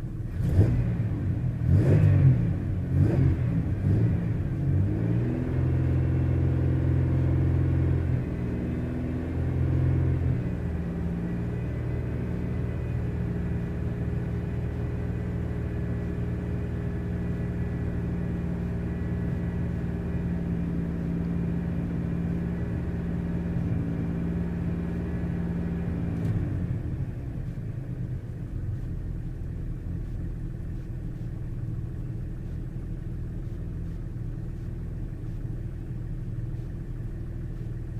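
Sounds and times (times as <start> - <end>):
misfiring car engine idling: 27.2 - 37.9.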